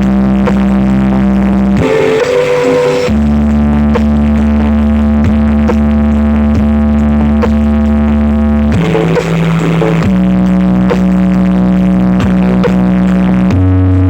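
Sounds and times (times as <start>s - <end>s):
electronic dance music: 1.8s - 4.0s, 8.7s - 14.0s.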